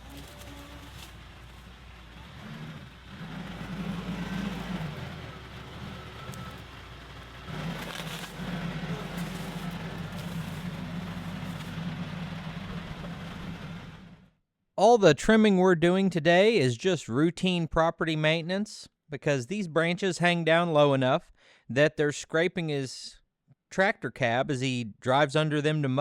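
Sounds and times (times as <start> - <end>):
tractor diesel engine running: 0.0 - 14.4.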